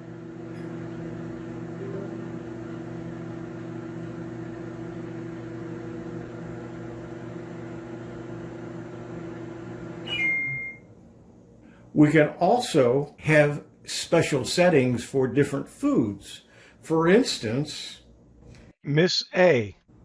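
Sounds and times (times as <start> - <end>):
microwave oven humming: 0.0 - 13.9.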